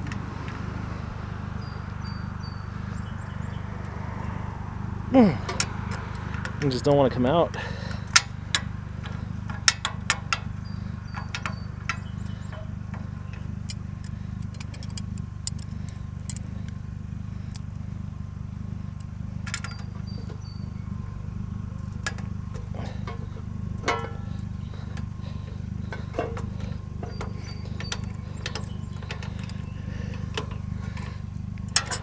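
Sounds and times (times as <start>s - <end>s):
steady low rumble: 0.0s - 32.0s
hand tools clicking on metal: 8.1s - 10.5s, 11.2s - 16.8s, 25.8s - 32.0s.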